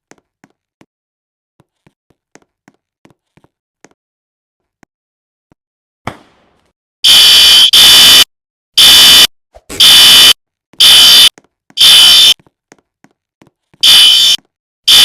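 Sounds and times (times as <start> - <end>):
fire alarm pulsing tone: 7.0 - 12.4, 13.8 - 15.0.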